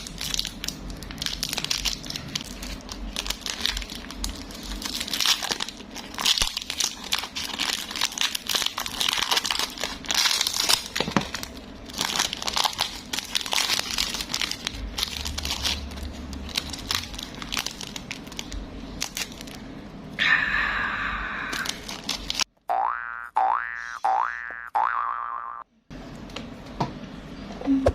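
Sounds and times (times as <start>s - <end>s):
plastic packaging crinkling and tearing: 0.0s - 19.6s, 21.6s - 22.5s.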